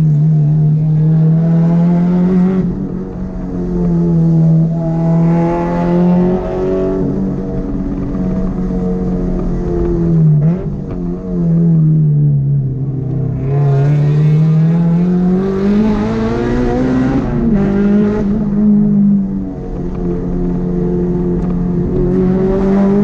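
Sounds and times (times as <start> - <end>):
car engine revving: 0.0 - 23.0.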